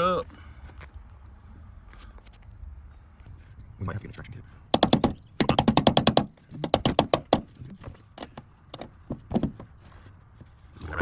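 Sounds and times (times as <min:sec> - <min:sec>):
taps and knocks: 0:04.7 - 0:09.7
rapid tool clicks: 0:04.8 - 0:07.4.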